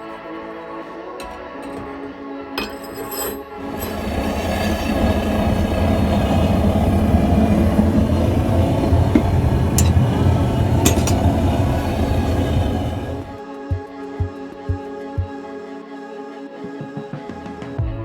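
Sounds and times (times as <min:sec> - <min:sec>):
quiet background music: 0:00.0 - 0:18.0
steady rumbling roar: 0:03.6 - 0:13.4.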